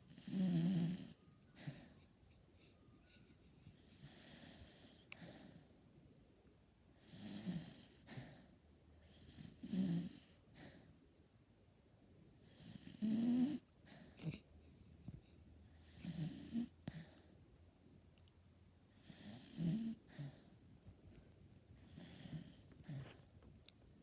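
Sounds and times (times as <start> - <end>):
dog snoring quietly: 0.0 - 2.1, 7.0 - 10.9, 12.4 - 14.5, 15.8 - 17.3, 18.9 - 20.6, 21.8 - 23.3.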